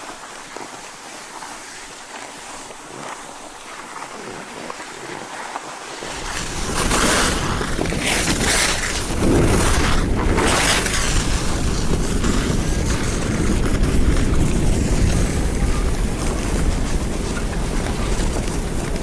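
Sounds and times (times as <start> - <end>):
skis scraping over snow: 0.0 - 19.0
wind buffeting microphone: 6.0 - 19.0.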